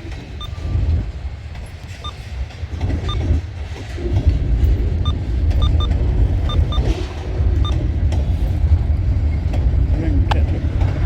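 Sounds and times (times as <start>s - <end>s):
freight train rumbling on rails: 0.0s - 11.0s
short beeps: 5.0s - 5.9s.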